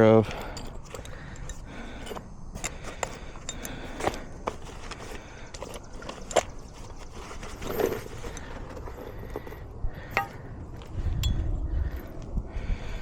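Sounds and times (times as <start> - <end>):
wind rumble on microphone: 8.5 - 13.0
metal tool clinks and taps: 10.1 - 10.4, 11.2 - 11.4.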